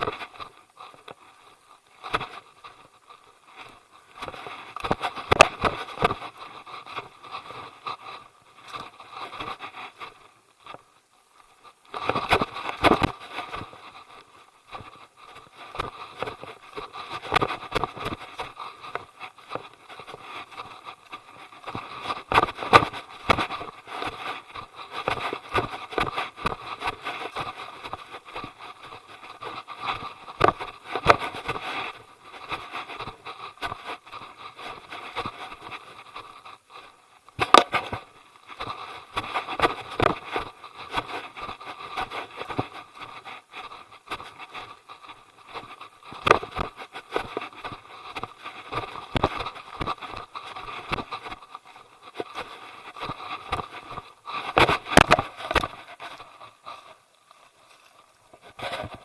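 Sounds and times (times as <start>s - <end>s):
camera rubbing while walking: 0.0s - 59.0s.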